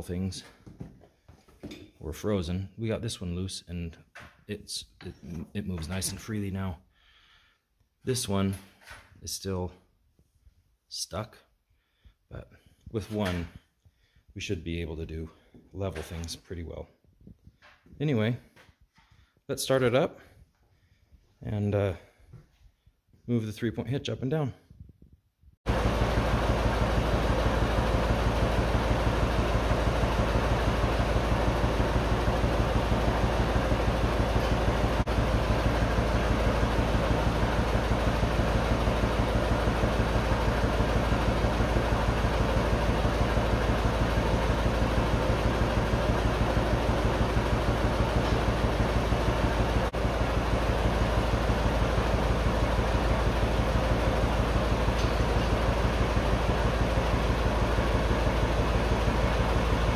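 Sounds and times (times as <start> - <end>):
tractor engine running: 25.7 - 59.9.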